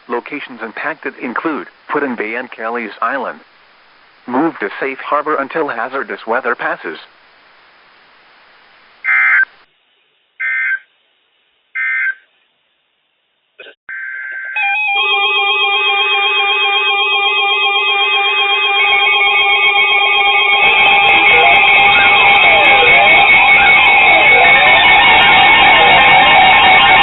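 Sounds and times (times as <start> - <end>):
layered electronic tone: 13.9 - 27.0
steady electronic tone: 14.7 - 27.0
buzzy digital tone bursts: 18.7 - 27.0.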